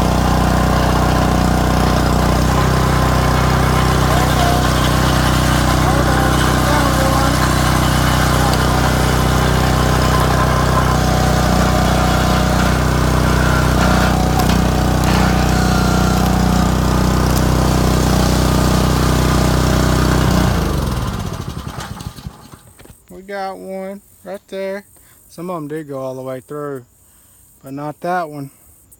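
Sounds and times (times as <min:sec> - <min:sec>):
small engine running: 0:00.0 - 0:22.8.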